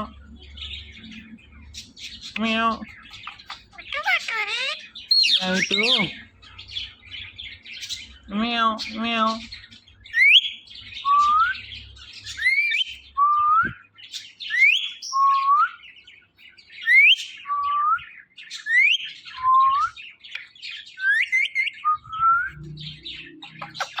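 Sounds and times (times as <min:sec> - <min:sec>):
parrot squawky chatter: 0:01.8 - 0:06.2, 0:23.3 - 0:24.0.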